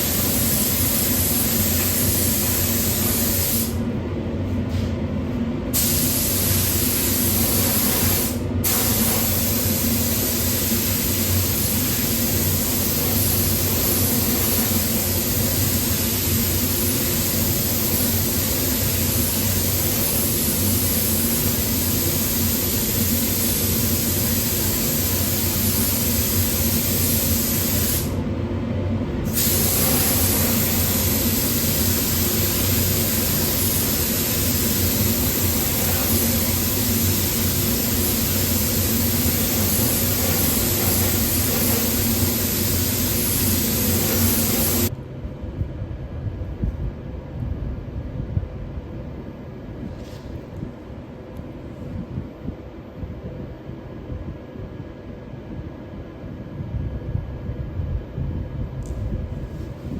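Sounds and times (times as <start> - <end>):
paint spray gun hissing: 0.0 - 3.8, 5.8 - 28.2, 29.3 - 44.9
steady low hum: 0.0 - 59.9.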